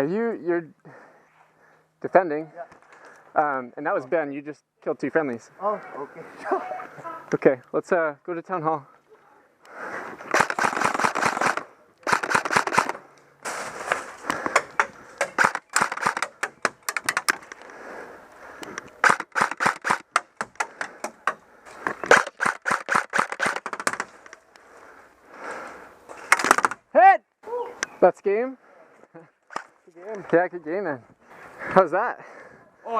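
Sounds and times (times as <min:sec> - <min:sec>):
airsoft gun bursts: 0:10.3 - 0:13.0, 0:15.2 - 0:16.6, 0:19.0 - 0:20.2, 0:22.1 - 0:24.0.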